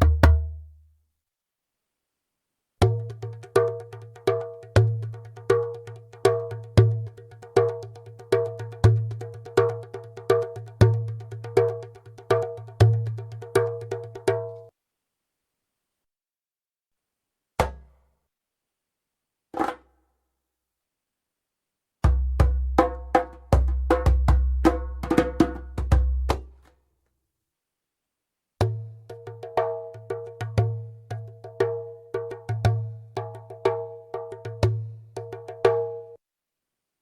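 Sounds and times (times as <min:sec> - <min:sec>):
djembe played by hand: 0:00.0 - 0:00.6, 0:02.8 - 0:14.7, 0:22.1 - 0:26.5, 0:28.6 - 0:36.1.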